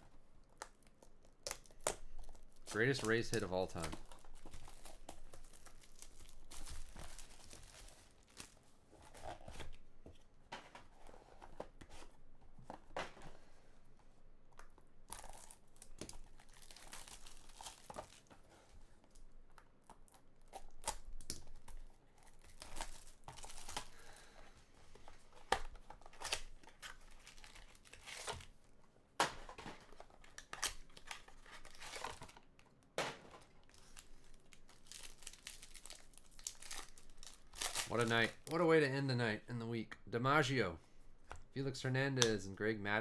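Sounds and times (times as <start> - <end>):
plastic wrapping tearing and crinkling: 0.5 - 9.9, 15.1 - 18.5, 19.9 - 24.2, 25.7 - 28.6, 29.4 - 32.6, 33.4 - 38.6.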